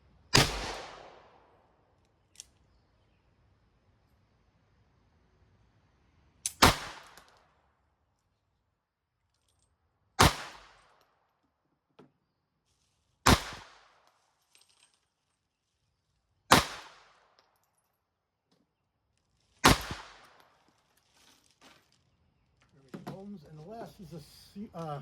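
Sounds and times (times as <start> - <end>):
pistol shots with echo: 0.3 - 1.6, 6.5 - 7.2, 10.2 - 10.8, 13.3 - 13.9, 16.5 - 17.2, 19.6 - 20.4.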